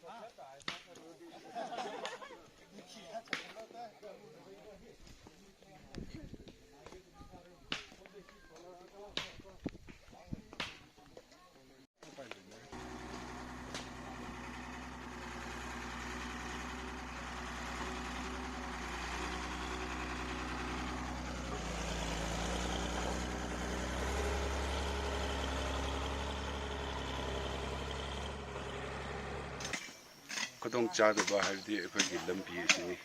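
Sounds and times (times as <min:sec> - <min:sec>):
engine running low hum: 0:12.6 - 0:29.8.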